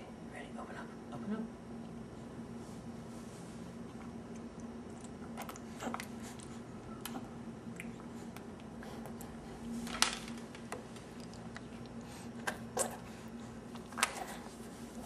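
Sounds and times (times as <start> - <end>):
baby wet mouth sounds: 4.0 - 9.4.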